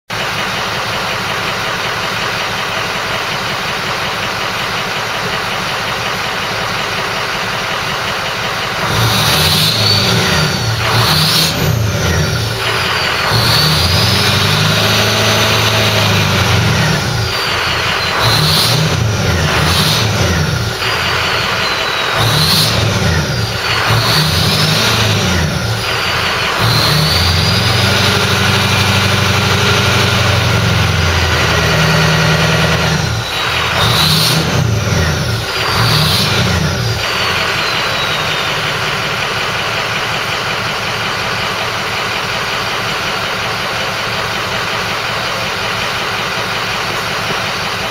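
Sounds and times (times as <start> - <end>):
diesel engine revving: 0.1 - 47.9
turbo whistling: 8.8 - 39.3.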